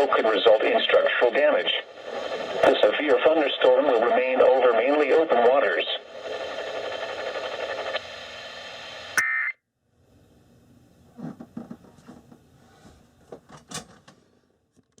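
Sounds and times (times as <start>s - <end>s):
radio broadcast hiss: 0.0s - 9.5s.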